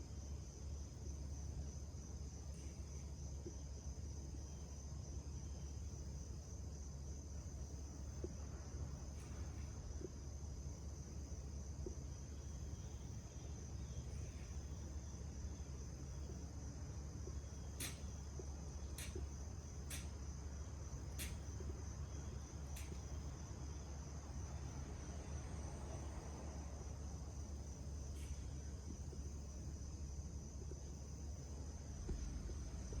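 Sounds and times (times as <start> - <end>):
crickets trilling: 0.0 - 33.0
short sharp clicks: 17.8 - 18.1.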